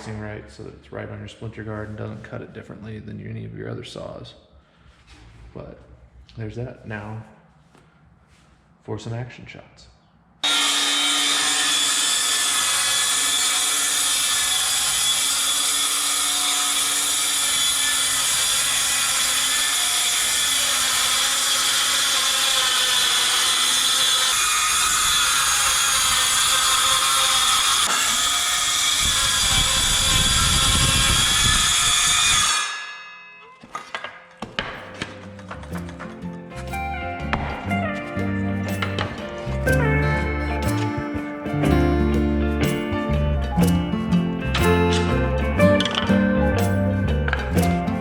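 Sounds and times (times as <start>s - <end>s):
circular saw cutting: 10.4s - 34.0s, 43.6s - 48.0s.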